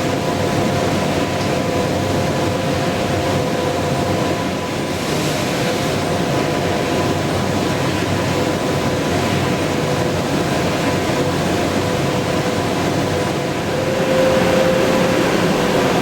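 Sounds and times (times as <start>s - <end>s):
milling machine spindle whine: 12.0s - 16.0s.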